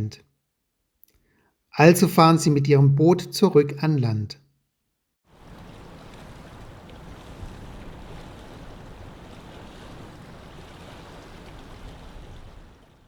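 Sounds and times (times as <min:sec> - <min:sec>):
lake water small waves washing: 0:05.3 - 0:13.0.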